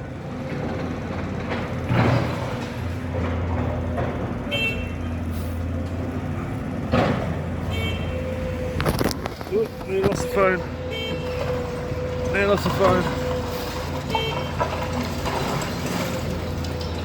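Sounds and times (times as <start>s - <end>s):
diesel engine running: 0.0s - 17.0s
street traffic: 0.0s - 17.0s.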